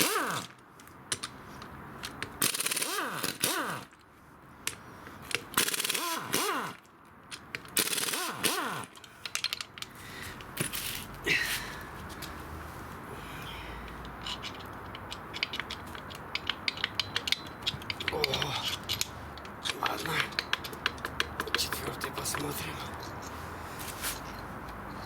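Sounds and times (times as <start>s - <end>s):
power tool spinning out bolts: 7.7s - 9.6s.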